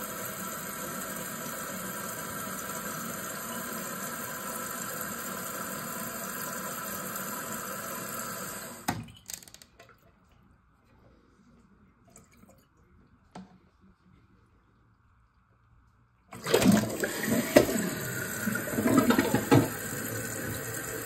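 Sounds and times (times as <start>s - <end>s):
toilet tank refilling: 0.0s - 9.1s, 16.3s - 21.0s.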